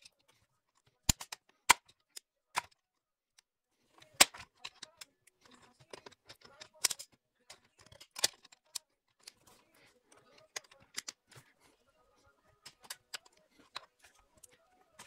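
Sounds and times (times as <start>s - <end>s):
clicks and knocks of hand tools: 1.0s - 2.8s, 4.1s - 9.6s.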